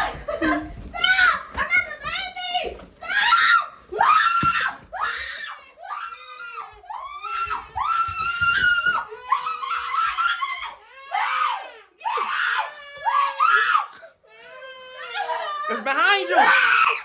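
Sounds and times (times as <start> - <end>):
woman screaming and crying: 15.0 - 17.0.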